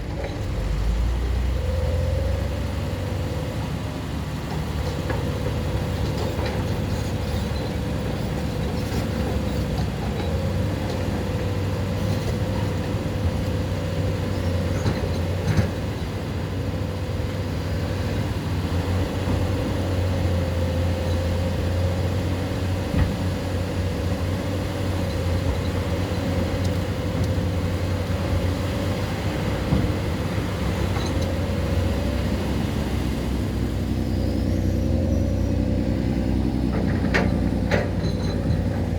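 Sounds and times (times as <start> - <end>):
excavator diesel engine droning: 0.0 - 38.9.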